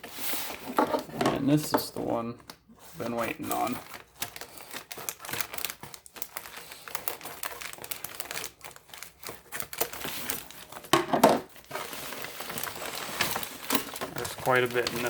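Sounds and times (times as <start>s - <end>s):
packaging crinkling and rustling: 0.0s - 15.0s.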